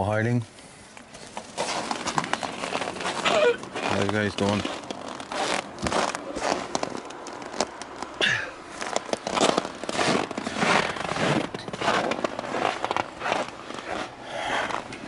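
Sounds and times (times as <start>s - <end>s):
footsteps crunching on frozen snow: 1.2s - 15.0s.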